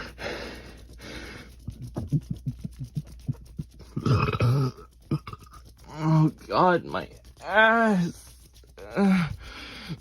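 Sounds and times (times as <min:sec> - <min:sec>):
person breathing out heavily: 0:00.0 - 0:01.6, 0:08.9 - 0:10.0
person burping: 0:03.9 - 0:05.6
low gulping sounds in throat: 0:03.9 - 0:05.7.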